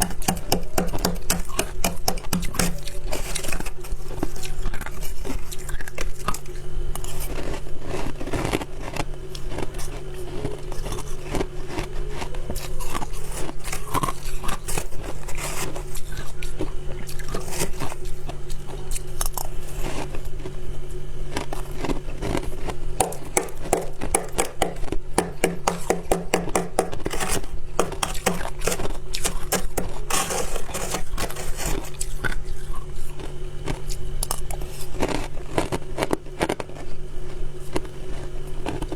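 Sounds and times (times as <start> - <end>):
steady low hum: 0.0 - 38.9
ice being crunched: 26.9 - 36.9.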